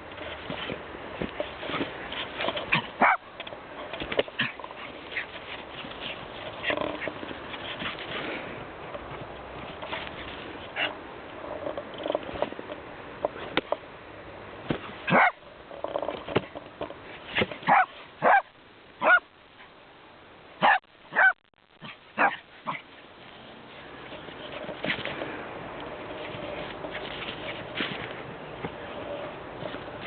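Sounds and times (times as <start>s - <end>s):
small dog barking: 2.7s - 3.3s, 15.0s - 15.4s, 17.6s - 19.3s, 20.6s - 22.8s.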